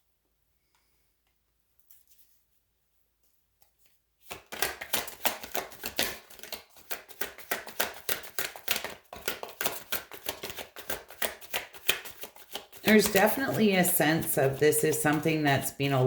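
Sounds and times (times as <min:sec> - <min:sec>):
cards being shuffled: 0:03.6 - 0:15.7.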